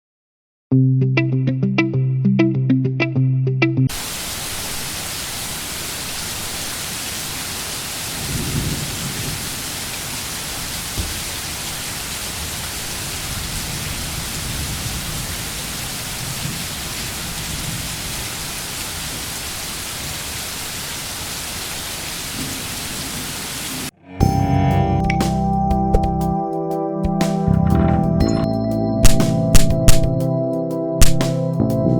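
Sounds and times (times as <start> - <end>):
steady rain: 3.9 - 23.9
low rumble of thunder: 8.2 - 9.9, 12.5 - 18.3, 27.4 - 28.4.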